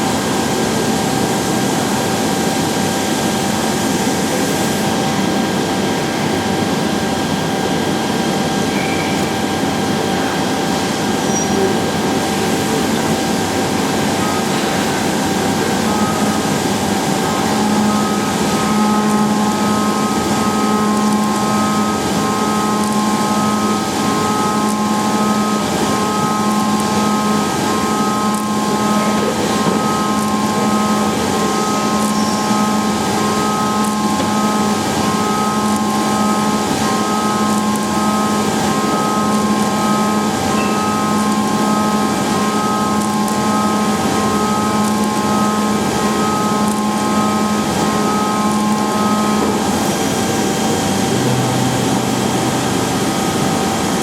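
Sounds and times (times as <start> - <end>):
machine mechanical whir and hum: 0.0 - 54.0.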